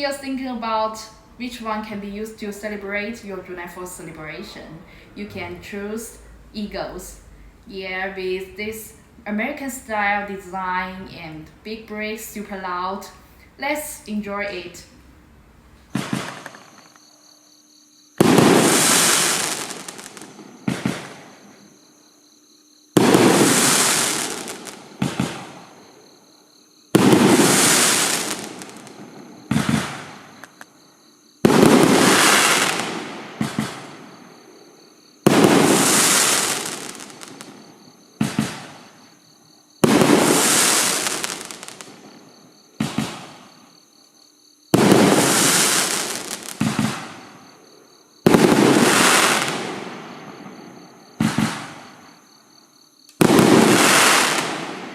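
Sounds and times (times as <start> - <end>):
fireworks launch reports: 0.0 - 15.0, 15.9 - 16.9, 18.2 - 21.7, 23.0 - 26.0, 26.9 - 30.6, 31.4 - 34.6, 35.2 - 39.2, 39.8 - 42.2, 44.8 - 47.5, 48.3 - 52.1, 53.2 - 54.9
fireworks breaking in the air: 15.9 - 17.1, 18.2 - 21.7, 23.0 - 26.1, 26.9 - 30.7, 31.4 - 39.2, 39.8 - 43.7, 44.7 - 47.6, 48.2 - 52.2, 53.2 - 54.9.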